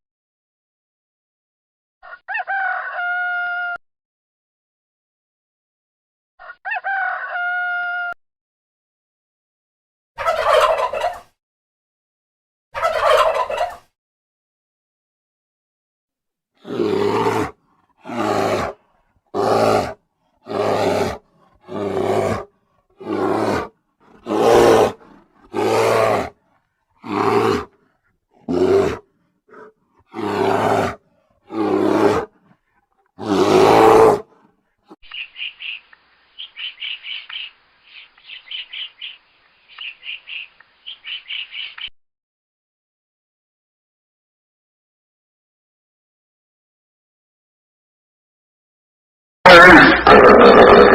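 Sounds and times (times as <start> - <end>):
large animal calling loudly: 16.6 - 26.4, 27.0 - 32.4, 33.2 - 34.3
birds chirping rapidly: 35.0 - 41.9.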